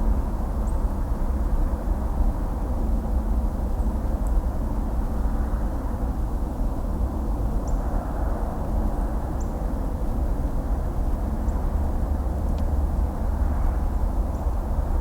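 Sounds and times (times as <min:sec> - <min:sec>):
distant highway traffic: 0:03.8 - 0:15.0.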